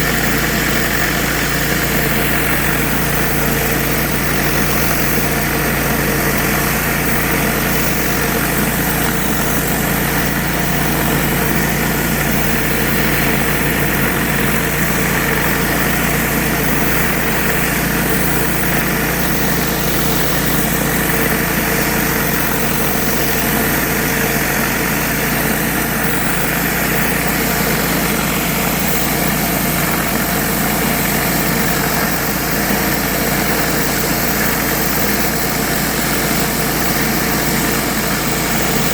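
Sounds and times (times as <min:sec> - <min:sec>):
pressure washer engine running: 0:00.0 - 0:38.9.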